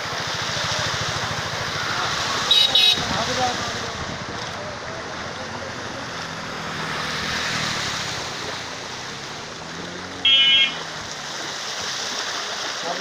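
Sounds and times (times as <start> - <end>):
floodwater rushing: 0.0 - 13.0
vehicle horn: 2.4 - 3.2, 10.2 - 10.9.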